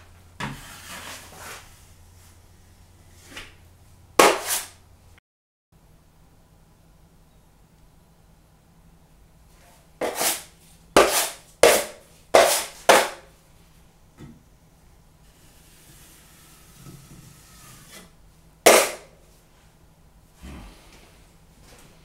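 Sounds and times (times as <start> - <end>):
compound being spread: 0.4 - 3.5, 4.2 - 4.8, 10.0 - 13.2
knife scraping pan edge: 4.2 - 4.7, 10.0 - 13.2.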